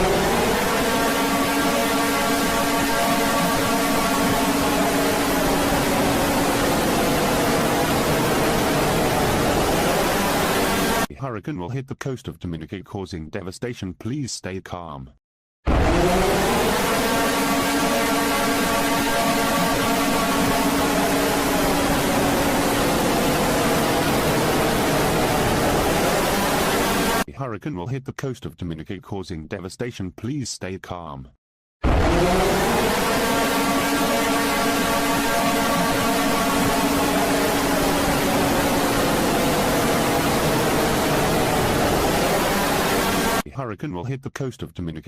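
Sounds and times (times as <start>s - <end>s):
low droning tone: 31.9s - 43.4s.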